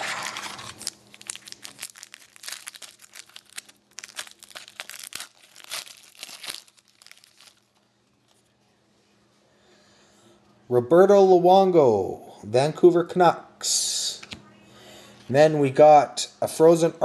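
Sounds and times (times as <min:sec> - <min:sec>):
trading cards rustling and crinkling: 0:00.0 - 0:08.5.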